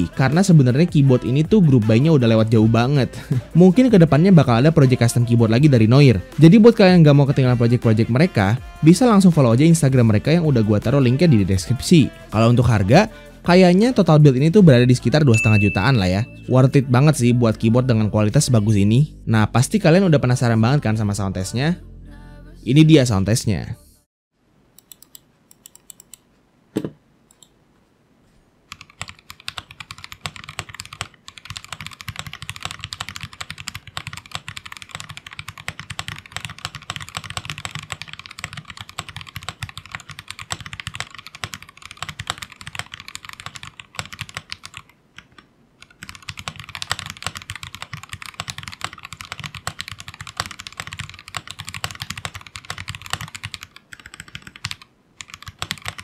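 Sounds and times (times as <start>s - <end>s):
knock: 26.8s - 27.0s
mechanical keyboard typing: 28.7s - 56.0s.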